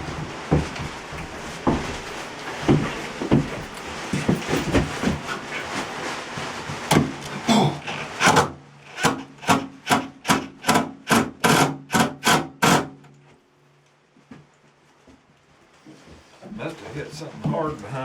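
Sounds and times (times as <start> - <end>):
screw grinding into wood: 7.8 - 13.0.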